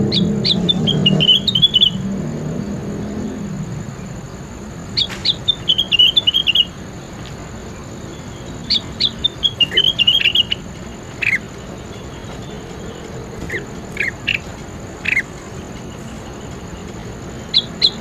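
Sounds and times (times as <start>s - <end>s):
songbird chirping: 0.0s - 18.0s.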